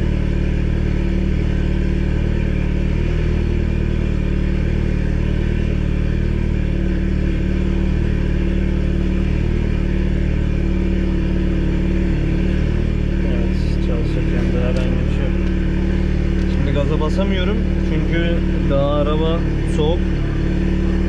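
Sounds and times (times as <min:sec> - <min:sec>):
car engine idling: 0:00.0 - 0:21.0.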